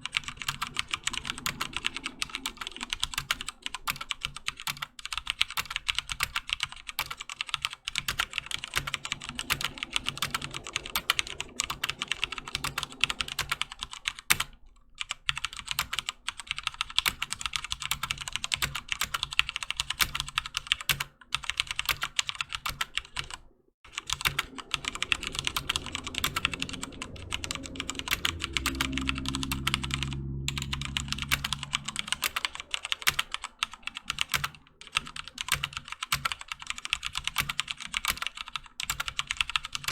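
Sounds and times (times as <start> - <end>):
low hum: 0.0 - 4.8, 7.8 - 14.9, 23.0 - 35.3
fast typing on mechanical keyboard: 0.0 - 39.9.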